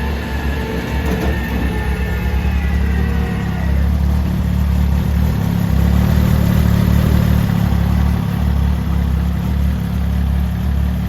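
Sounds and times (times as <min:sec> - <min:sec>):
high whine: 0:00.0 - 0:05.6
vehicle engine idling: 0:00.0 - 0:11.0.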